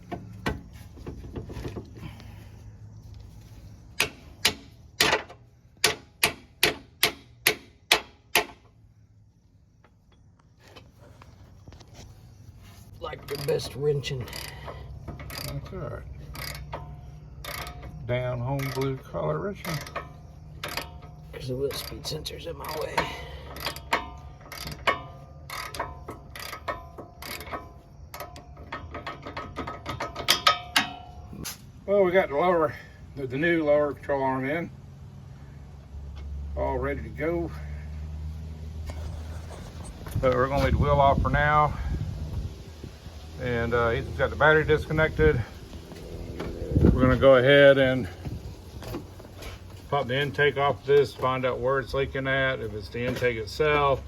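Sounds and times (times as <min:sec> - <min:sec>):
ratchet wrench clicking: 0:13.2 - 0:15.7, 0:16.3 - 0:31.6.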